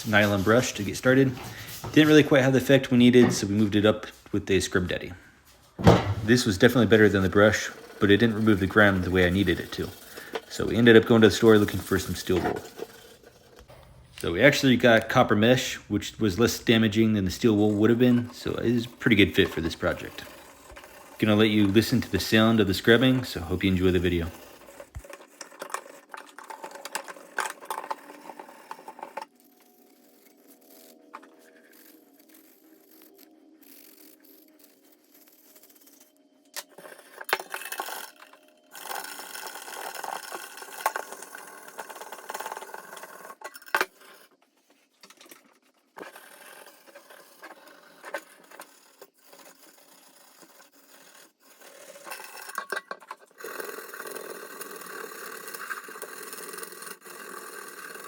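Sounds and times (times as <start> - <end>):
mesh pad scrubbing metal: 0.0 - 3.9.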